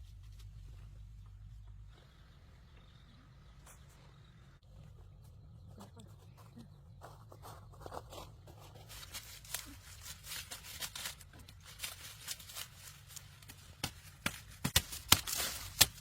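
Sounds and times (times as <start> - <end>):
rustling: 7.0 - 16.0.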